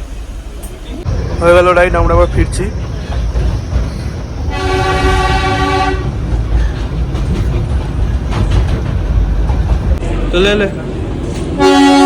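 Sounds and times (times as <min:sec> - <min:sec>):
train running rumble: 0:00.0 - 0:12.0
train whistle blast: 0:04.5 - 0:06.0, 0:11.6 - 0:12.0.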